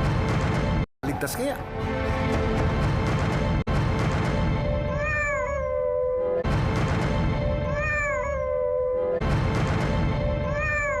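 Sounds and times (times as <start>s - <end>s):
cat meowing: 4.9s - 6.2s, 7.6s - 9.2s, 10.4s - 11.0s.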